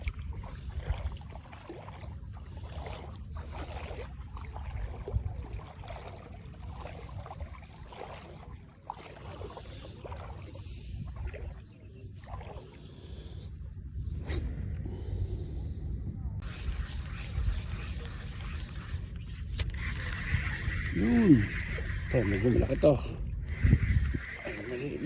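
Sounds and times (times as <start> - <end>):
water sloshing and splashing: 0.0 - 25.0
steady low rumble: 12.3 - 18.2.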